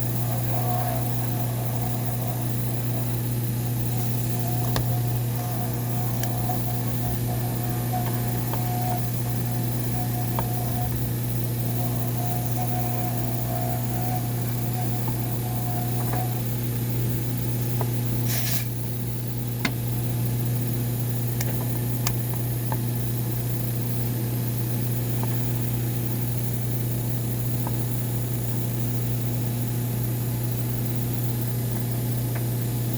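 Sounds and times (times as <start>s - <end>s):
low machine hum: 0.0s - 32.9s
brief high hiss: 18.3s - 18.7s.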